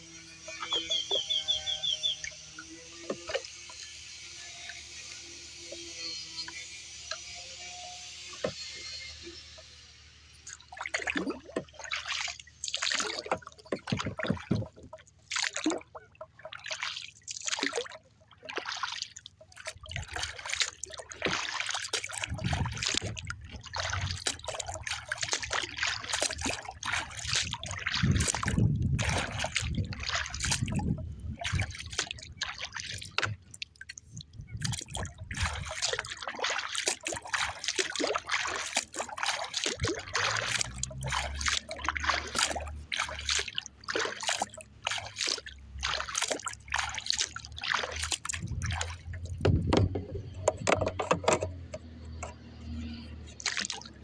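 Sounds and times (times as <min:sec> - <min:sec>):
water lapping against kayak hull: 0:00.0 - 0:54.0
wind rumbling on microphone: 0:22.2 - 0:24.8, 0:26.4 - 0:35.8, 0:48.2 - 0:53.2.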